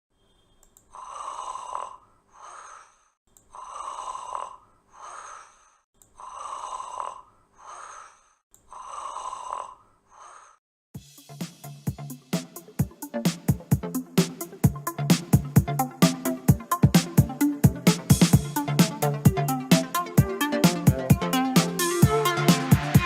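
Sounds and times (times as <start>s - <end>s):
person snoring: 0.9s - 10.6s.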